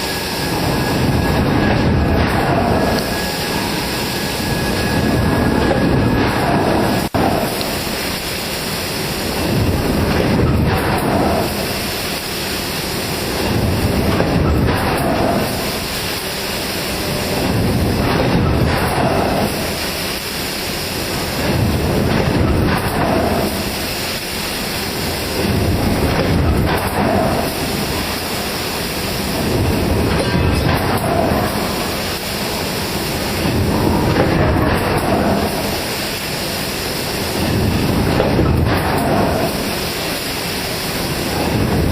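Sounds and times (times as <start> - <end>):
forging press rumble: 0.0 - 41.9.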